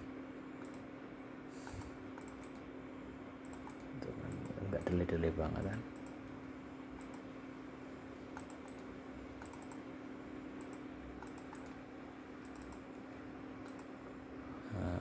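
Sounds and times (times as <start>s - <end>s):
steady low hum: 0.0s - 15.0s
computer mouse and keyboard clicks: 0.6s - 0.9s, 1.6s - 2.7s, 3.4s - 6.2s, 7.0s - 7.3s, 8.3s - 9.9s, 10.6s - 11.8s, 12.4s - 13.0s, 13.6s - 14.0s.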